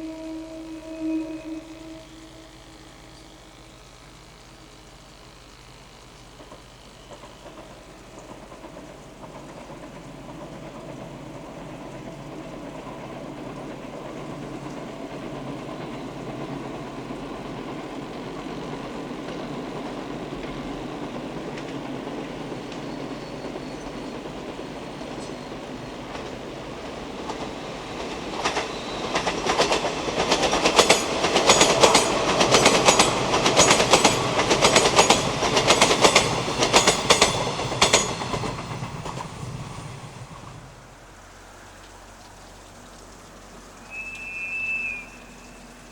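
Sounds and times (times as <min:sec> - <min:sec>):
train rumble: 0:00.0 - 0:45.9
train wheels clickety-clack: 0:06.3 - 0:40.9.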